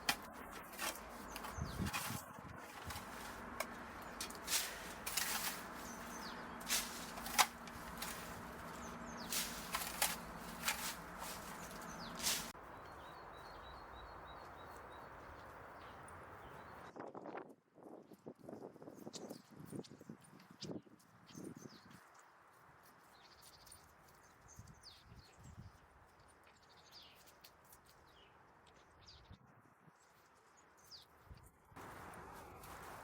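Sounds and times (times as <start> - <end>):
branches snapping and rustling: 0.0 - 12.6, 31.8 - 33.0
bird chirping: 4.0 - 16.9.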